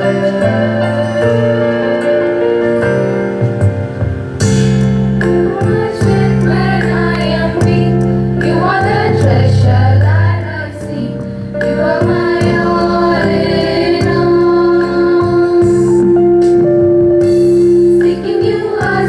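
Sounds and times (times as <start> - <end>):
held instrumental accompaniment: 0.0 - 19.0
women singing: 5.4 - 16.7, 17.9 - 19.0.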